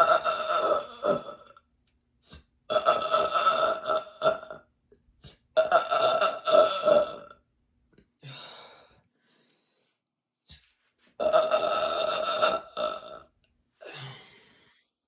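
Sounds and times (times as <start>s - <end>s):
woman burping loudly: 0.0s - 1.7s, 2.7s - 4.7s, 5.5s - 7.4s, 11.2s - 14.2s.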